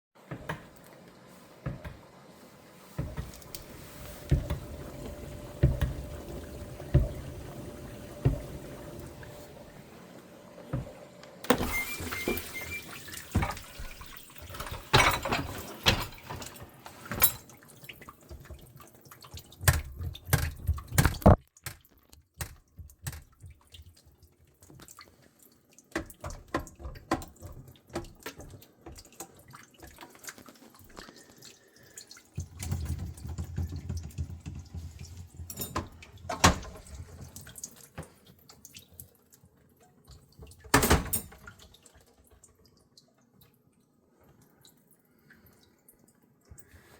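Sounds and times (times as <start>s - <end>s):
dishwasher running: 0.2s - 21.4s, 32.4s - 38.2s, 40.4s - 41.9s.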